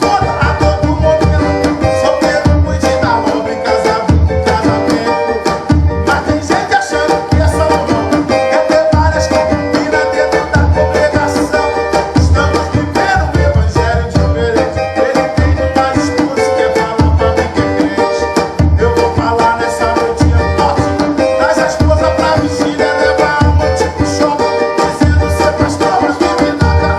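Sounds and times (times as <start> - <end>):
fast cavaquinho strumming: 0.0 - 26.9
deep drum thuds: 5.6 - 6.4.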